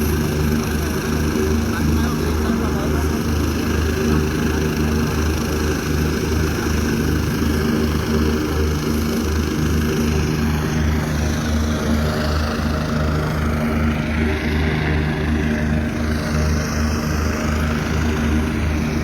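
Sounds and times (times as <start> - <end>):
helicopter turbine noise: 0.0 - 19.0.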